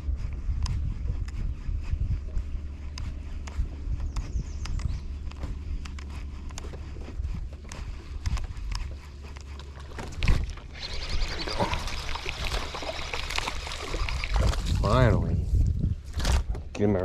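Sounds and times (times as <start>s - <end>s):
steady low rumble: 0.0s - 17.0s
splashing water hiss: 10.7s - 14.8s.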